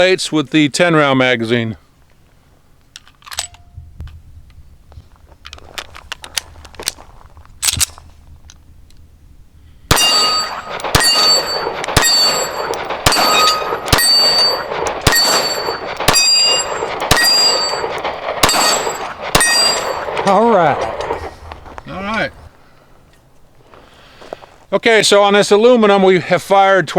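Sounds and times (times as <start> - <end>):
pistol shots: 9.9 - 21.4
steel plate ringing clang: 9.9 - 21.4.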